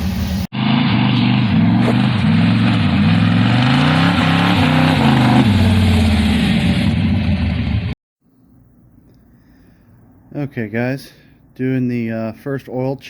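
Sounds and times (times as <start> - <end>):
car engine accelerating: 0.0 - 8.0.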